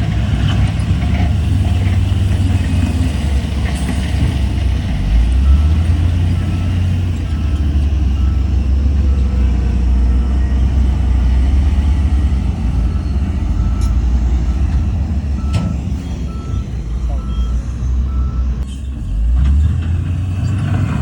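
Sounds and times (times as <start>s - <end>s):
diesel engine rumbling: 0.0s - 21.0s
reversing alarm beeping: 5.4s - 18.6s.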